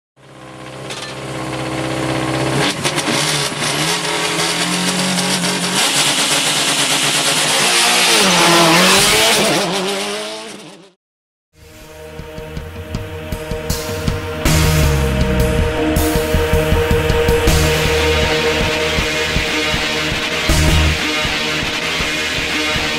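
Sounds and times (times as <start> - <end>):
rally car engine revving: 0.2 - 11.0, 12.9 - 22.9
music with heavy beat: 11.6 - 22.9.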